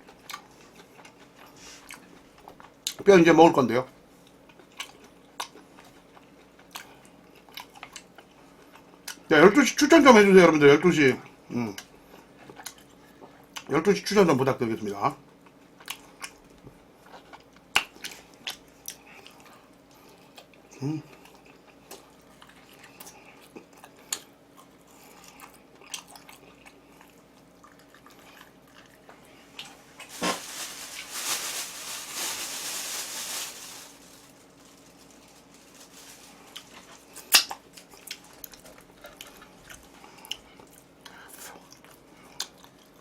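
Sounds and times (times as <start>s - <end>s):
close chewing with smacks: 0.0s - 3.0s, 4.2s - 9.2s, 11.8s - 13.7s, 15.3s - 29.8s, 36.4s - 43.0s
loud rustling: 30.0s - 37.0s.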